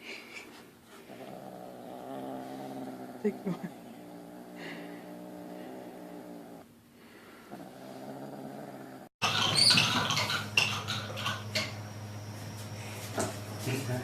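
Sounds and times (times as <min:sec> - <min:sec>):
cat purring: 0:01.1 - 0:06.6
clattering and knocking: 0:09.2 - 0:11.8.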